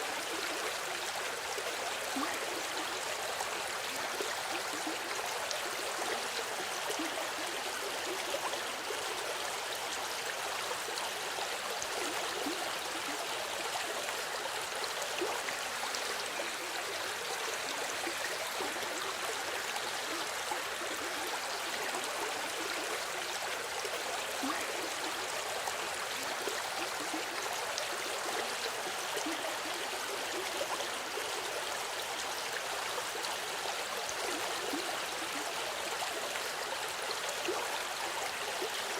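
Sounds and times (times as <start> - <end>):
river water flowing over stones: 0.0 - 38.9.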